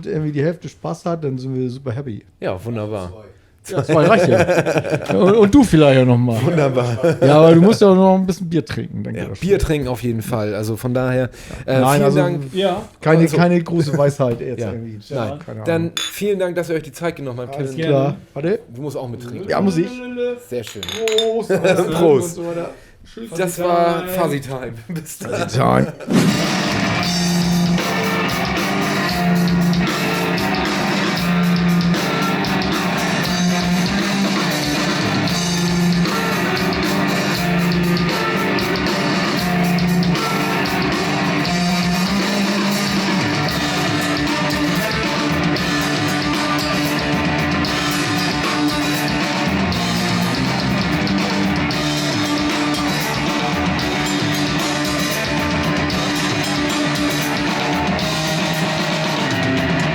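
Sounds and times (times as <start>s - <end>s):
drums: 3.9s - 7.8s, 26.0s - 59.9s
electric guitar rock riff: 26.2s - 59.9s.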